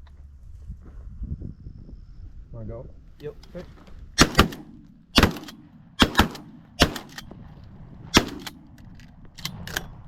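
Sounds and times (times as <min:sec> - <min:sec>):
shotgun blasts: 0:04.2 - 0:07.5, 0:08.1 - 0:08.8.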